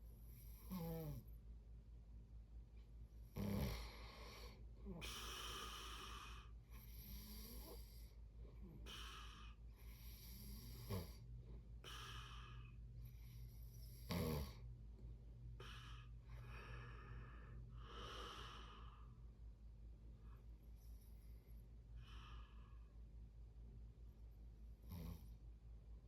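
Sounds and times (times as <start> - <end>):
steady low hum: 0.0 - 26.0
person snoring: 0.6 - 1.2, 3.4 - 8.0, 13.8 - 14.6
low snort: 13.9 - 14.6.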